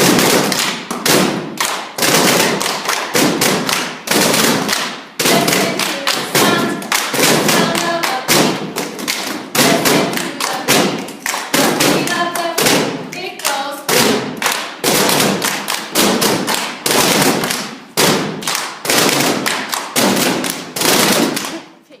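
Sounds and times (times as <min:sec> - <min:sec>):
people clapping: 0:00.0 - 0:21.6
feet stomping: 0:13.9 - 0:21.6.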